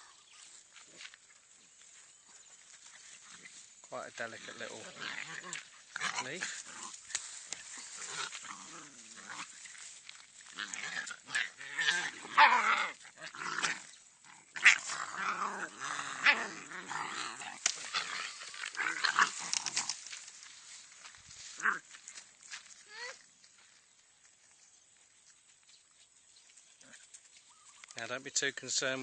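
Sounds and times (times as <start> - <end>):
dog growling and whining: 10.6 - 19.6.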